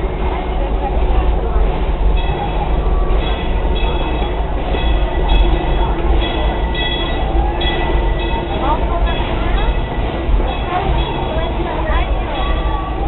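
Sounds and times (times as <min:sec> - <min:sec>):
people's voices: 0:00.0 - 0:13.0
steam train low rumble: 0:00.0 - 0:13.0.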